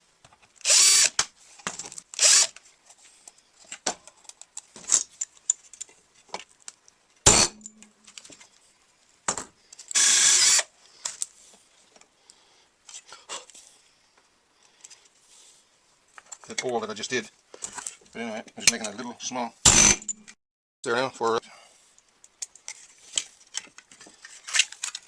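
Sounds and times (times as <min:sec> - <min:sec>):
power drill bursts: 0:00.6 - 0:01.2, 0:02.2 - 0:02.6, 0:07.3 - 0:07.6, 0:09.9 - 0:10.7, 0:19.7 - 0:20.1
sharp knock: 0:07.3 - 0:07.8.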